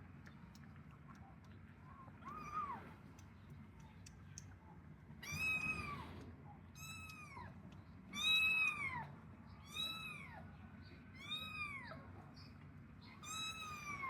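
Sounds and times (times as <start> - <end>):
kitten meowing: 6.8 - 7.4, 8.2 - 9.0, 13.2 - 14.0.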